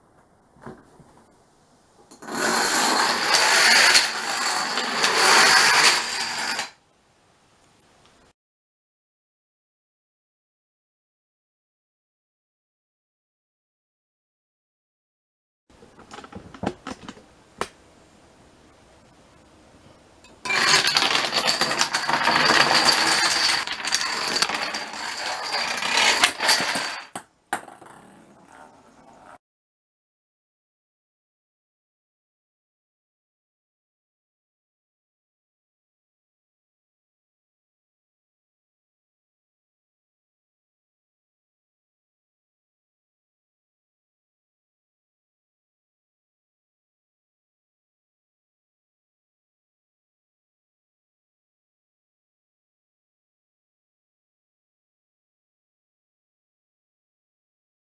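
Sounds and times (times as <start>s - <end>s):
dominoes toppling clatter: 20.5s - 27.2s.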